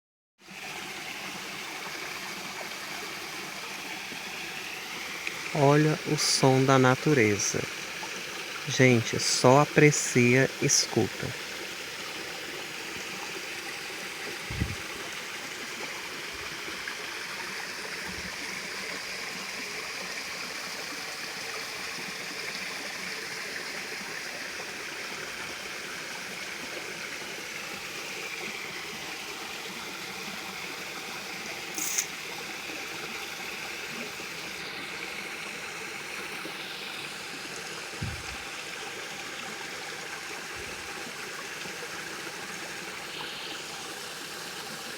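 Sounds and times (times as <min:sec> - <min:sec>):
water rushing over rocks: 0:00.7 - 0:22.5, 0:33.2 - 0:44.9.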